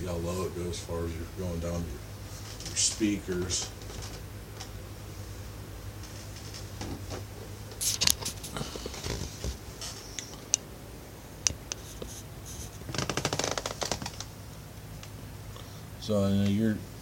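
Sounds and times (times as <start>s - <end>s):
mic stand handling clicks: 11.4s - 11.8s.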